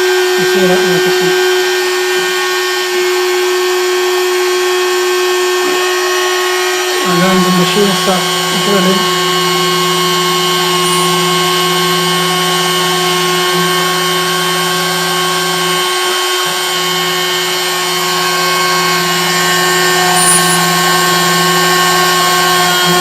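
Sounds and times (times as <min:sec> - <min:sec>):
machine spindle whine: 0:00.0 - 0:23.0
low hum: 0:05.6 - 0:23.0.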